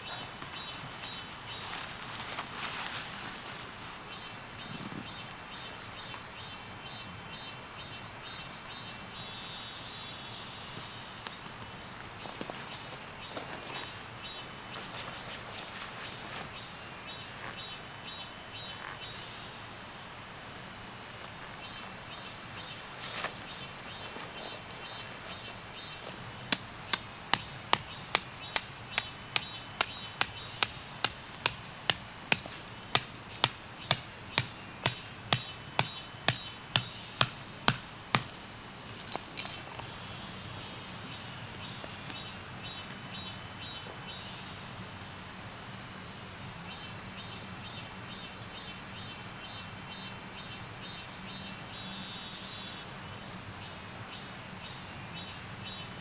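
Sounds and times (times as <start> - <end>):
hammer striking metal tent peg: 26.5 - 38.4.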